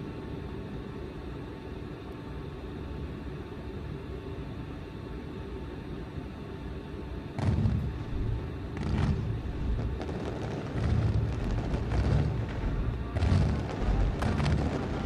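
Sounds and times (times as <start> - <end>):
low steady rumble: 7.0 - 15.0
fireworks booming: 7.4 - 15.0
fireworks crackling: 7.4 - 15.0.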